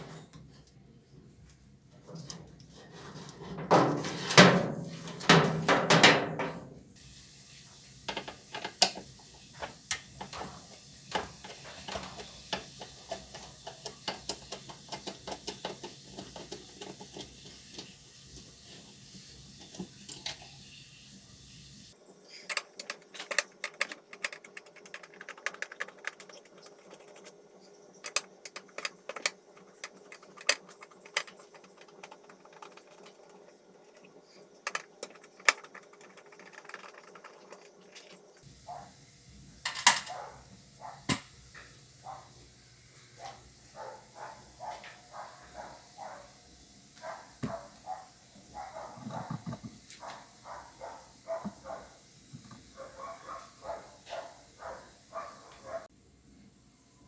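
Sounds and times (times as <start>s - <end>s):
metal parts and tools clinking: 39.7s - 40.2s.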